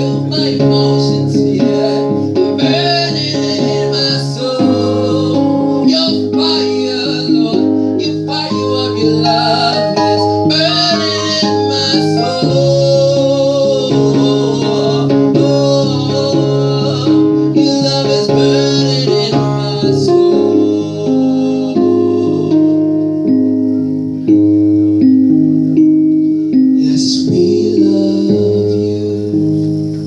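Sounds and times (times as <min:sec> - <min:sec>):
person singing: 0:00.0 - 0:23.9, 0:26.7 - 0:29.8
guitar and keyboard chords: 0:00.0 - 0:30.0.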